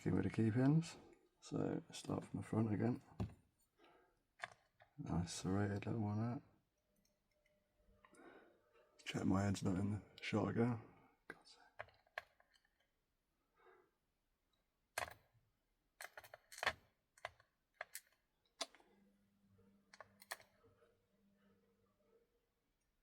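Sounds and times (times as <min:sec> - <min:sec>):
small metallic clicks and taps: 0:16.0 - 0:18.9, 0:19.9 - 0:20.6.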